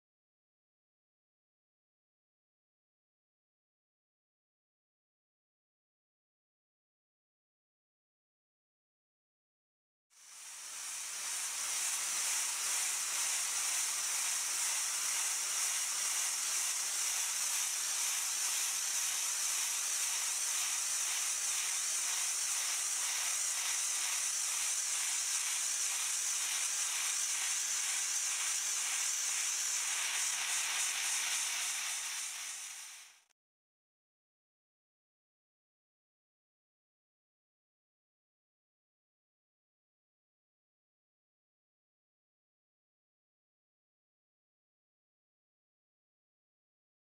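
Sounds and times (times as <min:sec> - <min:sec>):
blasting nozzle hissing: 0:10.2 - 0:33.3.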